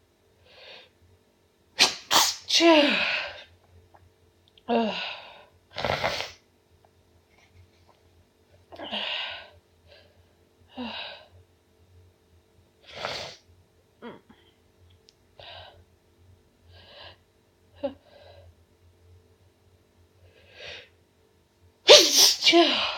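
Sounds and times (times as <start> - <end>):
woman sneezing: 1.8 - 3.4, 21.9 - 22.9.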